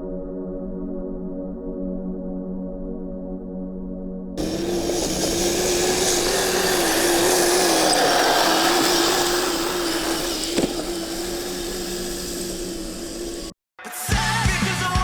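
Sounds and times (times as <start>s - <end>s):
electric motor whining: 4.4s - 13.5s
mechanical hiss: 4.4s - 13.5s.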